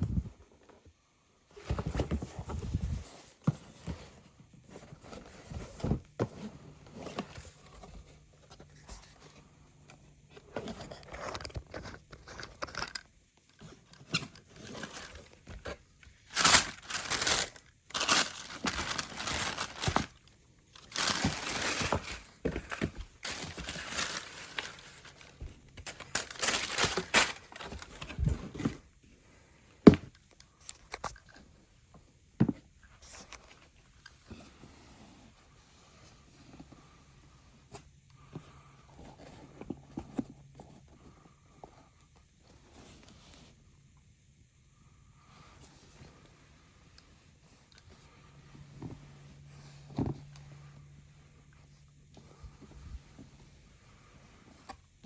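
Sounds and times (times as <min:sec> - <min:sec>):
paper packaging crinkling: 0:14.2 - 0:28.7.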